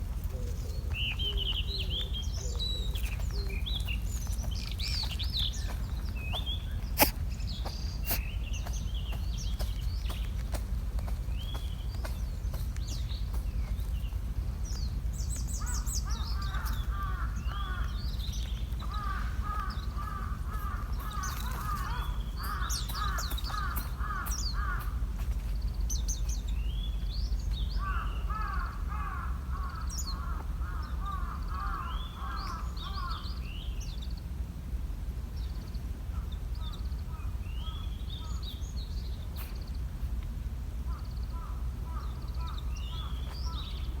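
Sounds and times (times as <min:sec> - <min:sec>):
small birds chirping: 0:00.0 - 0:34.5, 0:35.2 - 0:44.0
steady low rumble: 0:00.0 - 0:44.0.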